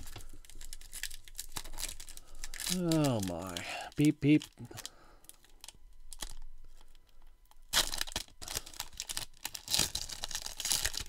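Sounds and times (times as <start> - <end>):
wrapper crinkling and tearing: 0.0 - 11.0.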